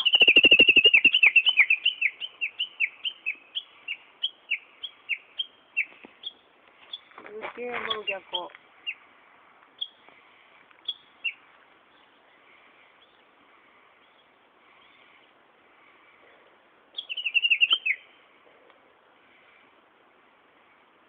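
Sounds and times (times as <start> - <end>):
bush warbler singing: 0.0 - 9.1, 9.8 - 13.3, 16.9 - 18.3.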